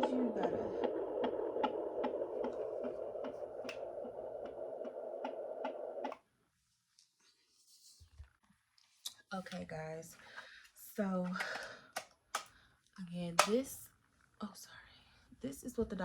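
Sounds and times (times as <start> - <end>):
fetal heartbeat through doppler: 0.0 - 6.2.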